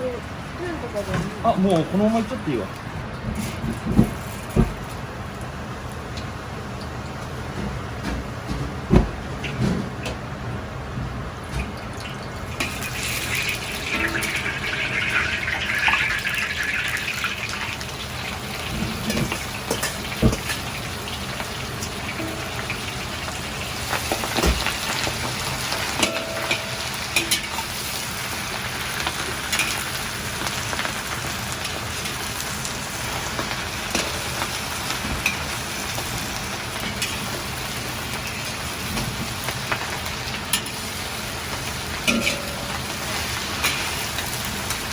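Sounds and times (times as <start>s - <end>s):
sizzling hiss in wok: 12.4s - 44.9s.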